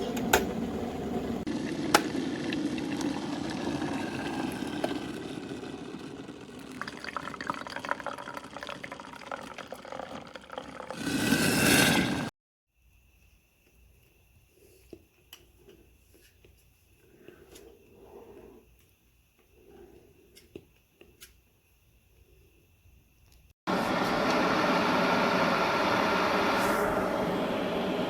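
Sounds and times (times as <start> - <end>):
kettle water boiling: 0.0 - 12.3, 23.7 - 28.0.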